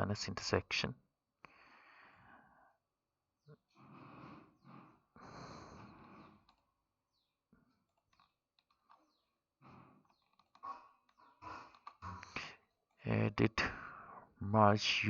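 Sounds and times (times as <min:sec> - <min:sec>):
soft breath: 0:01.4 - 0:02.8, 0:03.6 - 0:06.6, 0:09.6 - 0:12.6.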